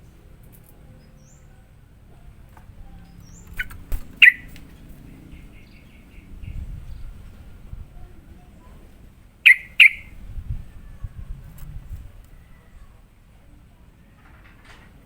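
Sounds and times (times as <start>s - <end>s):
bird calling: 3.0s - 6.6s, 9.4s - 10.2s.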